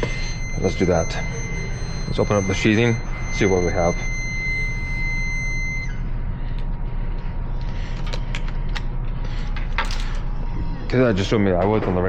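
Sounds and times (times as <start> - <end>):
multimeter beep: 0.0 - 6.0
steady low hum: 0.0 - 12.0.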